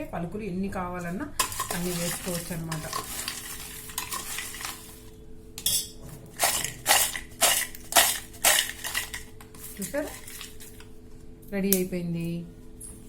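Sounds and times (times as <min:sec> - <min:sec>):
spoon stirring food: 0:01.4 - 0:10.9.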